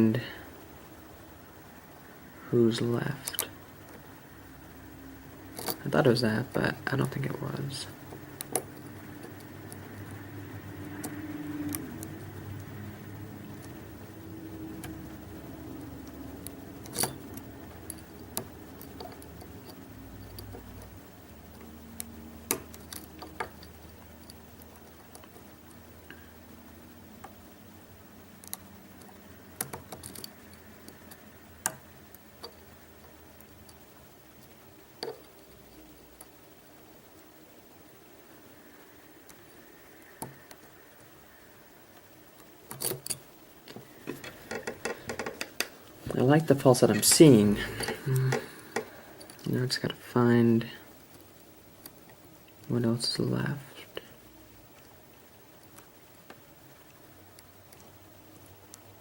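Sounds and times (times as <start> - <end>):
faint steady hum: 0.0 - 59.0
lock picks clicking on pins: 42.7 - 45.7.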